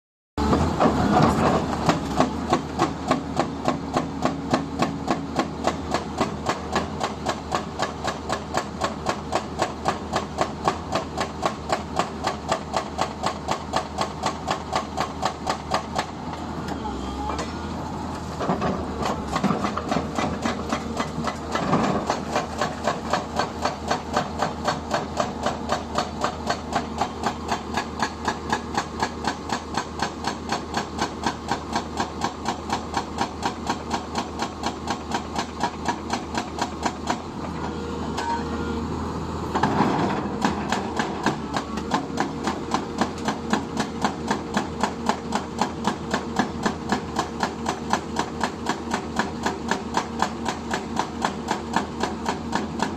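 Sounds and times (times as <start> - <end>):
excavator engine running: 0.4 - 52.9
hydraulic breaker hammering: 18.4 - 37.6, 39.6 - 52.9.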